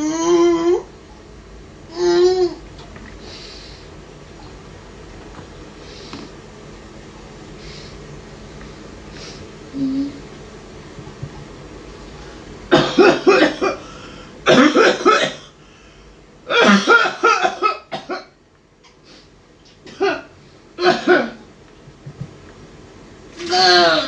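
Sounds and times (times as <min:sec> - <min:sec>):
person coughing: 0:12.7 - 0:13.9, 0:14.5 - 0:15.6, 0:16.5 - 0:18.3, 0:19.9 - 0:21.4.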